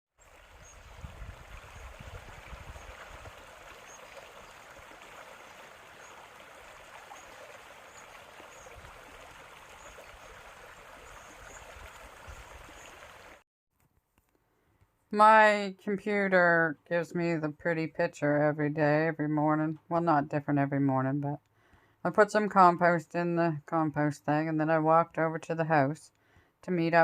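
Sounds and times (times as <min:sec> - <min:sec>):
stream running: 0:00.2 - 0:13.4.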